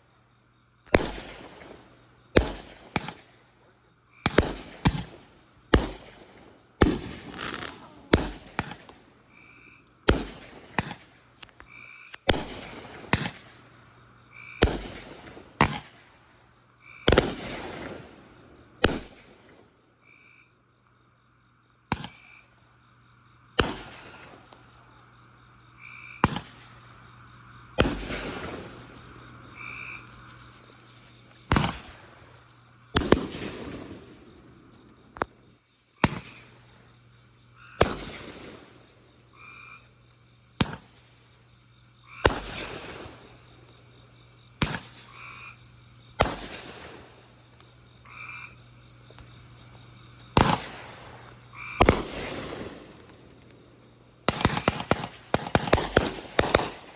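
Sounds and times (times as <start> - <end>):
fireworks banging and crackling: 0.9 - 3.5, 4.2 - 9.2, 10.0 - 13.7, 14.6 - 16.2, 17.0 - 19.8, 21.9 - 22.3, 23.6 - 24.8, 26.2 - 26.9, 27.7 - 36.9, 37.8 - 39.2, 40.6 - 41.3, 42.2 - 45.2, 46.0 - 48.1, 49.0 - 56.9.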